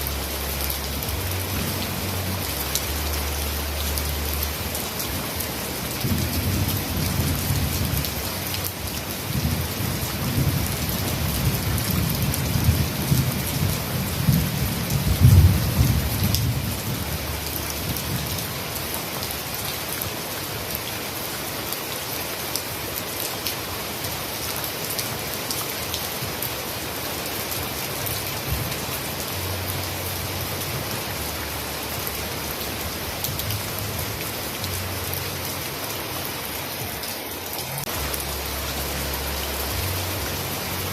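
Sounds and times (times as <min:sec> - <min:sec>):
heavy rain falling: 0:00.0 - 0:40.9
low rumble: 0:37.8 - 0:40.9.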